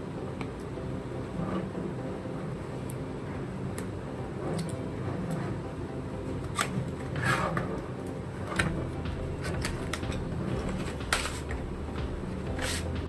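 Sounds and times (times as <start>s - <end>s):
packaging clicks and snaps: 6.4s - 6.8s.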